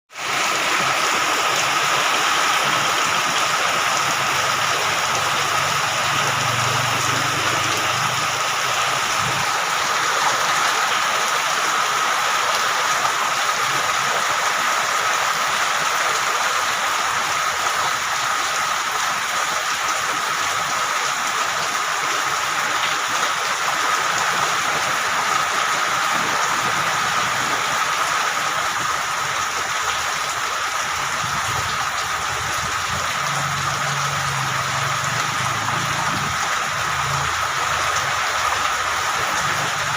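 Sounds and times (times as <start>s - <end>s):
heavy rain on a metal roof: 0.1s - 39.9s.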